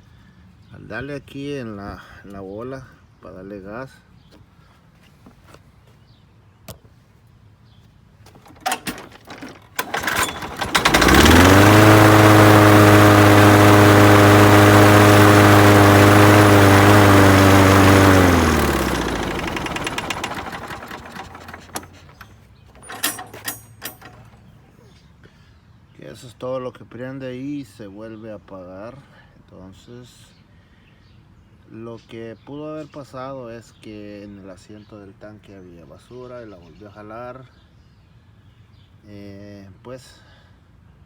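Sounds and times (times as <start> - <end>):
lawnmower engine starting and running: 8.3 - 24.8.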